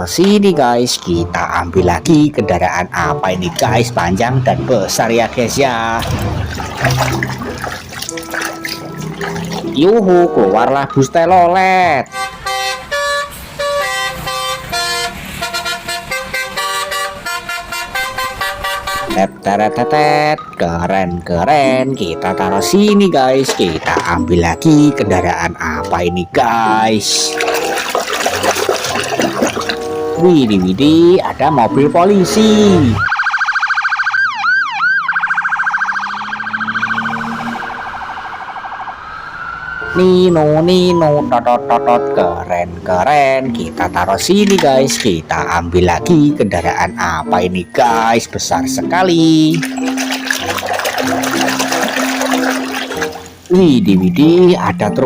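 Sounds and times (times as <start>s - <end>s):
multi-tone bus horn playing tune: 10.0s - 10.8s, 12.0s - 20.2s, 29.7s - 30.2s, 31.9s - 33.1s, 41.2s - 42.4s
electronic police siren: 31.6s - 41.2s.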